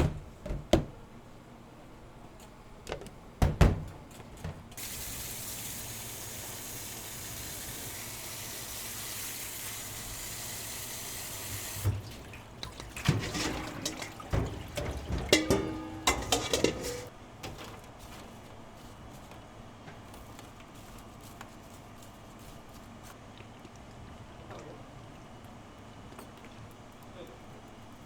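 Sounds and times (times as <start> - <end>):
dishes clattering and clinking: 12.7 - 17.8.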